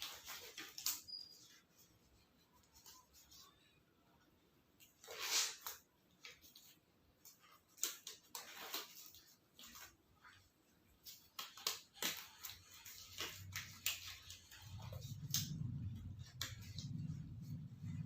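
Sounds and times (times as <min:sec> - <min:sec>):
rustling: 0:04.8 - 0:18.0
low hum: 0:14.5 - 0:18.0.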